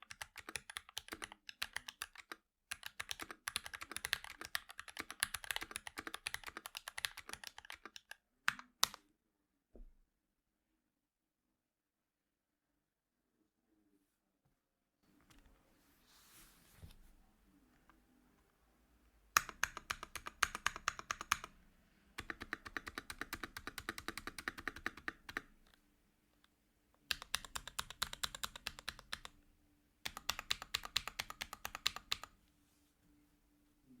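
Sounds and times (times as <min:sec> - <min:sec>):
mechanical keyboard typing: 0:00.0 - 0:09.0, 0:19.4 - 0:21.6, 0:22.2 - 0:25.6, 0:27.1 - 0:29.4, 0:30.0 - 0:32.4.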